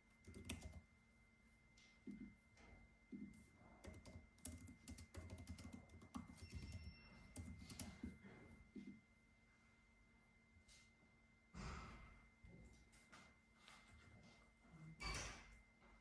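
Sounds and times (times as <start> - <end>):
computer keyboard typing: 0.1 - 0.9, 3.8 - 8.2.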